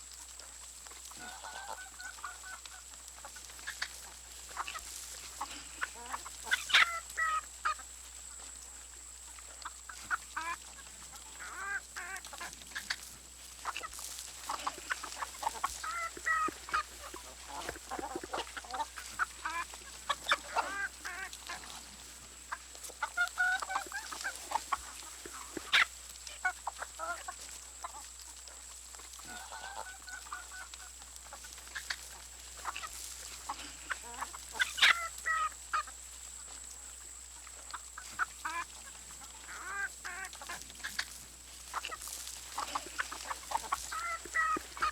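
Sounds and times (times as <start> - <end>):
chickens calling: 0.1 - 44.9.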